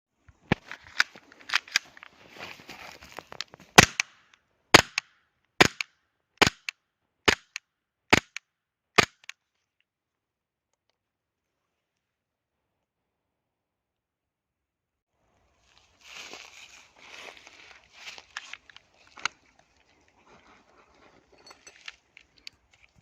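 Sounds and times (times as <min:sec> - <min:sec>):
handling clicks and rustling: 0:00.4 - 0:04.0, 0:17.6 - 0:23.0
airsoft pistol shots: 0:03.8 - 0:04.1, 0:04.8 - 0:06.7, 0:07.3 - 0:08.4.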